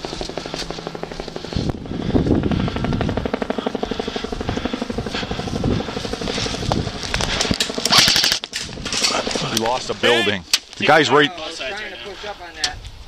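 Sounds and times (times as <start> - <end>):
airsoft guns firing full auto: 7.4 - 9.2.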